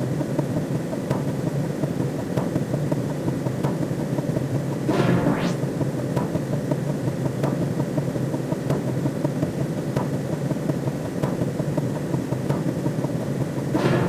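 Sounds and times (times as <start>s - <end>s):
low rumbling synthetic drone: 4.8s - 6.1s, 13.8s - 14.0s.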